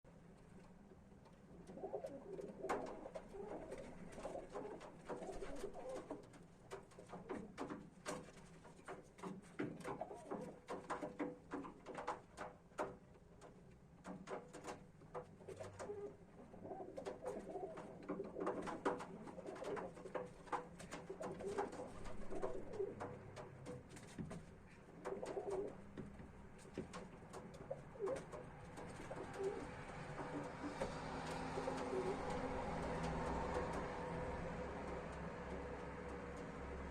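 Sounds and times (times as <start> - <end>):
pigeons cooing: 1.6 - 6.3, 9.8 - 10.7, 15.5 - 23.5, 24.8 - 25.8, 27.3 - 36.9.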